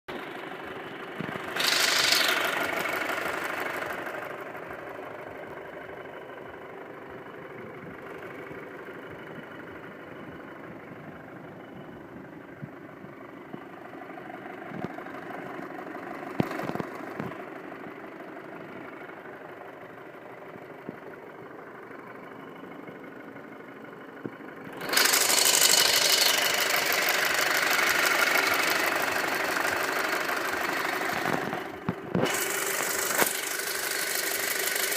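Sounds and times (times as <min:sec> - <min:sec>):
car engine idling with ticking: 0:00.1 - 0:34.9
sharp clicks: 0:01.4 - 0:03.1, 0:30.9 - 0:34.9.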